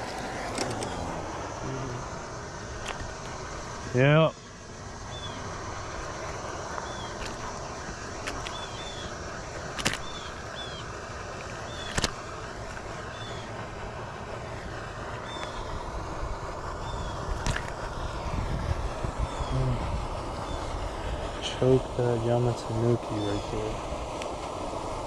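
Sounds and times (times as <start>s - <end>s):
sharp clicks: 9.7s - 10.2s, 11.4s - 12.8s.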